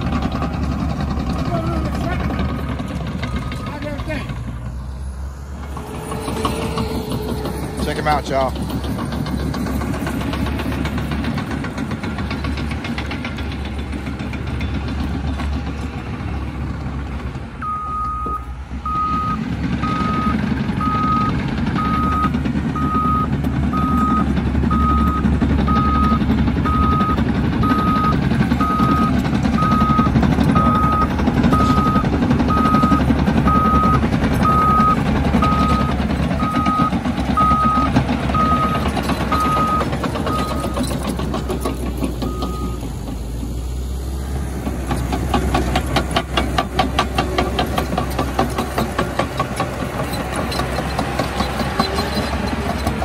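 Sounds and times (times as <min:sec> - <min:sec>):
bulldozer diesel engine: 0:00.0 - 0:53.0
backup alarm beeping: 0:17.6 - 0:40.8.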